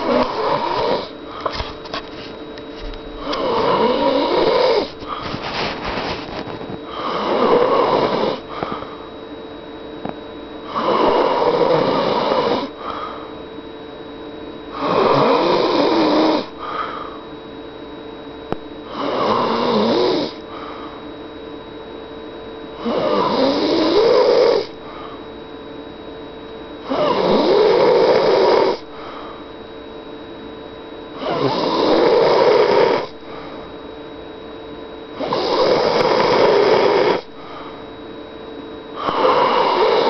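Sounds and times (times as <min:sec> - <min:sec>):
woman snoring loudly: 0:00.0 - 0:01.2, 0:03.2 - 0:05.3, 0:06.9 - 0:08.7, 0:10.6 - 0:13.2, 0:14.7 - 0:17.0, 0:18.9 - 0:20.4, 0:22.8 - 0:24.7, 0:26.8 - 0:28.8, 0:31.2 - 0:33.2, 0:35.2 - 0:37.3, 0:39.0 - 0:40.0.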